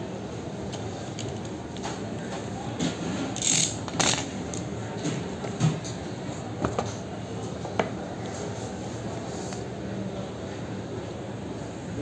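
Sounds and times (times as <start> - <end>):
murmur of market crowd: 0.0 - 12.0.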